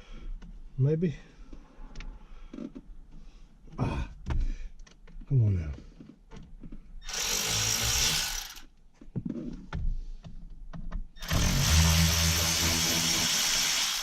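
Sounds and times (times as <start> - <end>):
power tool running: 7.0 - 8.6, 11.2 - 14.0
steady motor hum: 7.0 - 8.6, 11.2 - 14.0.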